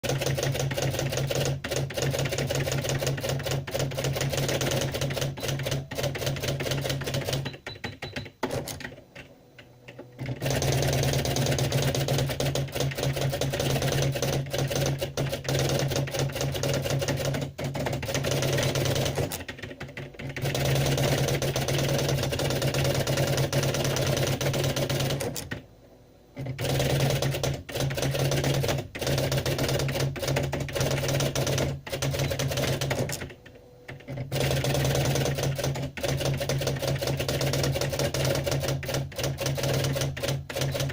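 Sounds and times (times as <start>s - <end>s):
typewriter keystroke clacks: 0.0s - 25.6s, 26.4s - 40.9s.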